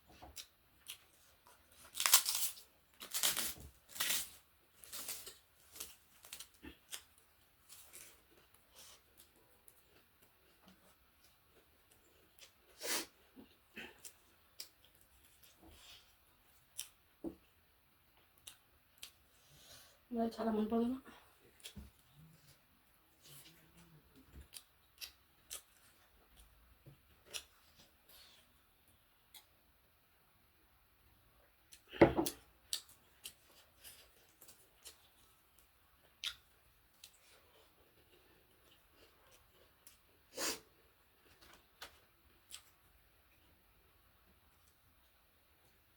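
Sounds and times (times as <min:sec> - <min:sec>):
person chewing food: 0:00.1 - 0:02.5, 0:04.9 - 0:19.4, 0:21.4 - 0:29.6, 0:31.6 - 0:43.8
chewing with mouth clicks: 0:23.2 - 0:26.5, 0:31.7 - 0:40.1.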